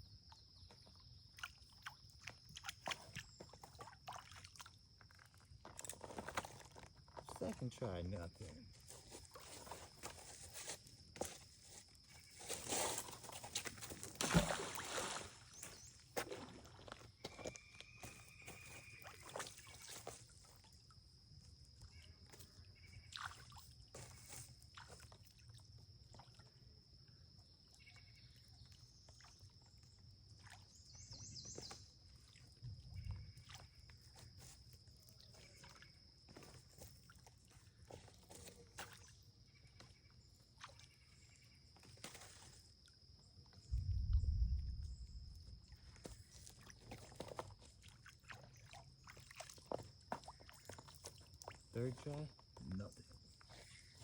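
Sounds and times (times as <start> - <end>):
magnet splashing into water: 14.1 - 15.5.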